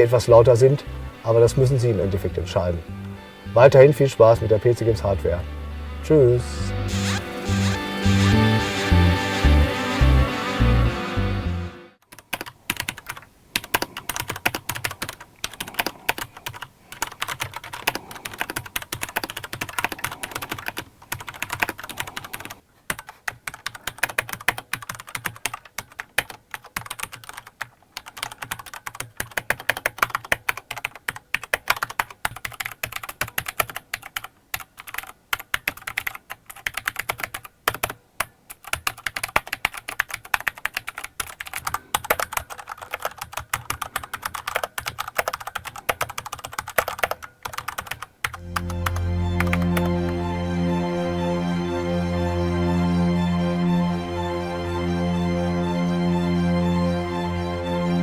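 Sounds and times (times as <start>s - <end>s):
fast mechanical keyboard typing: 12.0s - 49.9s.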